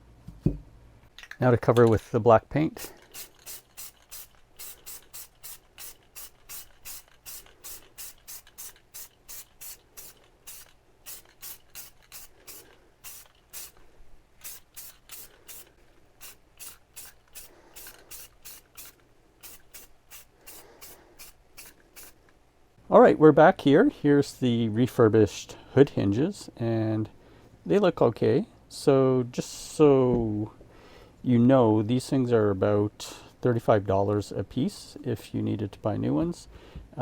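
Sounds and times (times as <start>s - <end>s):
aerosol spray bursts: 2.8s - 13.8s, 14.4s - 22.2s.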